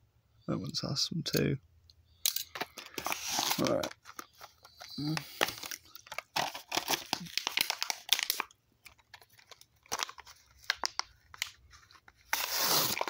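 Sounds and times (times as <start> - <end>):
plastic packaging crinkling: 2.5 - 13.0
packaging tearing: 2.8 - 11.6, 12.2 - 13.0.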